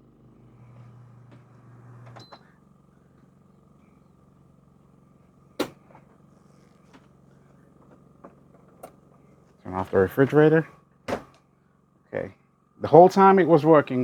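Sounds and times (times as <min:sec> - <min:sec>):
air conditioner hum: 0:00.0 - 0:14.0
faint steady hum: 0:00.0 - 0:14.0.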